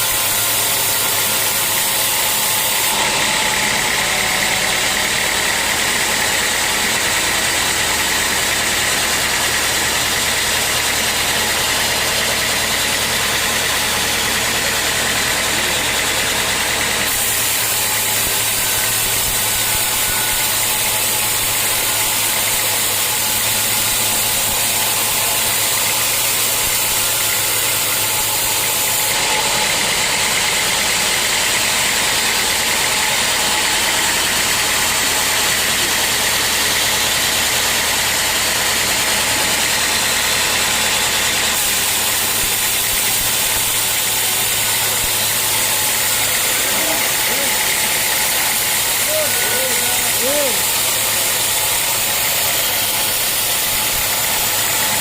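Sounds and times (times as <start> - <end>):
sawmill machinery hum and hiss: 0.0 - 55.0.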